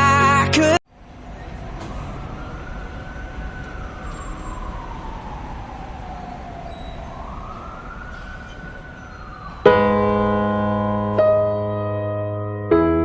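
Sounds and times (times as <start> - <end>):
emergency siren wailing: 0.9 - 12.1.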